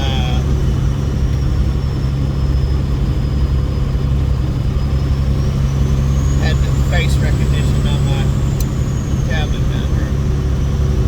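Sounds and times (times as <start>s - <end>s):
diesel truck engine droning: 0.0s - 11.0s
faint high whine: 0.0s - 11.0s.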